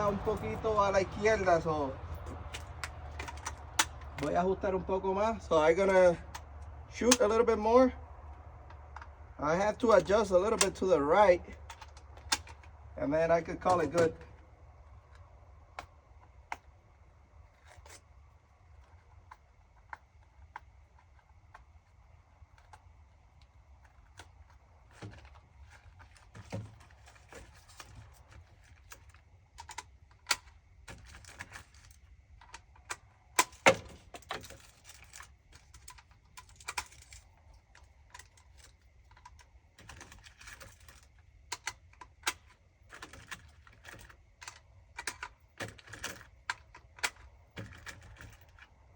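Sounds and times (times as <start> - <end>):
rifle scope clicks and knocks: 0.0 - 4.8.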